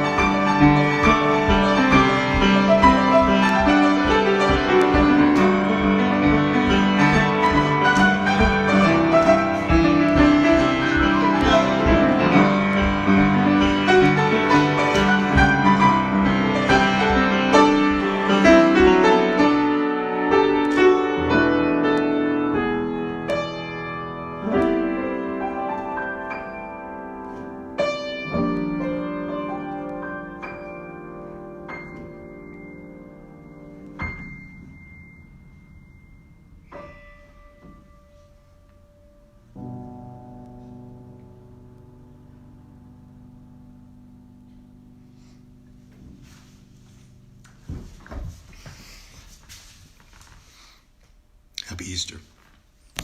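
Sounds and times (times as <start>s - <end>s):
solo piano improvisation: 0.0s - 49.4s.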